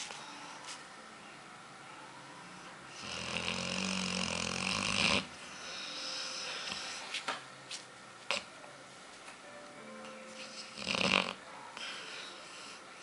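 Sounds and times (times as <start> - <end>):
dog snoring: 2.9 - 7.0, 10.5 - 11.4
soft breath: 5.4 - 7.2, 11.7 - 13.0.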